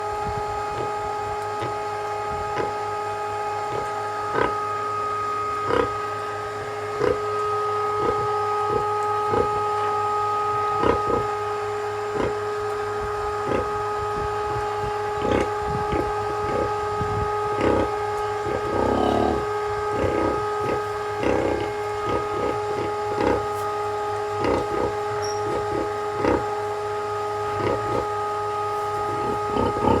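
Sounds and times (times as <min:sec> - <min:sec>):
steady tonal hum: 0:00.0 - 0:30.0
piglets chewing: 0:07.9 - 0:09.9, 0:14.5 - 0:30.0
piglet grunting: 0:15.1 - 0:16.7, 0:17.6 - 0:23.7, 0:24.3 - 0:26.6, 0:27.4 - 0:28.1, 0:28.7 - 0:30.0.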